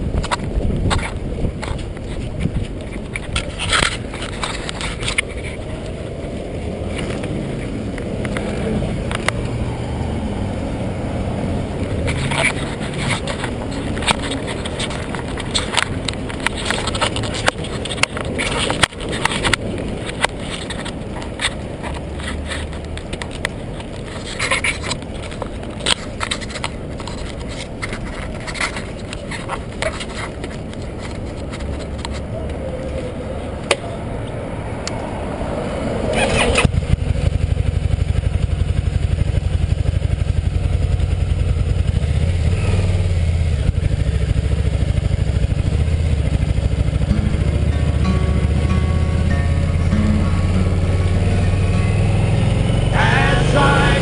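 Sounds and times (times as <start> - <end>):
wind buffeting: 0.0 - 21.8
motorcycle engine: 0.0 - 32.2, 35.1 - 54.0.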